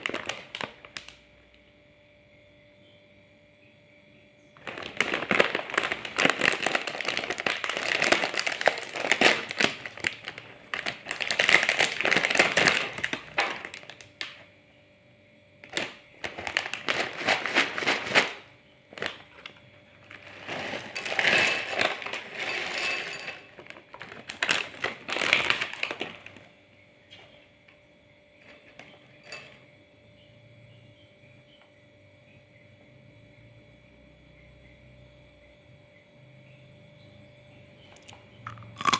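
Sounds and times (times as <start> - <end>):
crunching crispy crackers: 0.0 - 1.3, 4.6 - 14.5, 15.6 - 26.6, 38.0 - 38.9
faint steady hum: 0.0 - 38.9.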